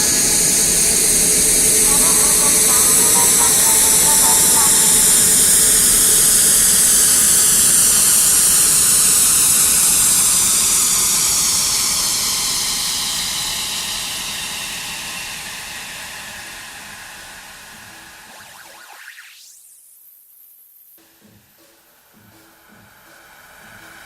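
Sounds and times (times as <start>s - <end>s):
steady hissing noise: 0.0s - 24.0s.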